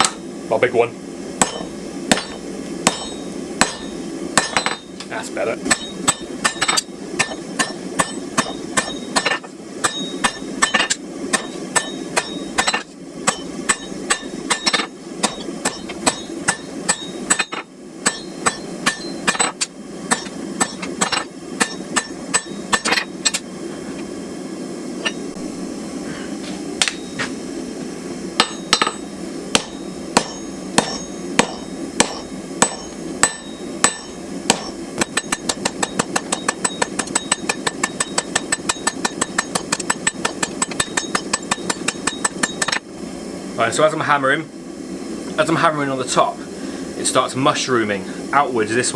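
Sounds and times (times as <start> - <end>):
hammer striking steel on anvil: 0.0 - 0.2, 1.4 - 23.5, 28.4 - 42.8.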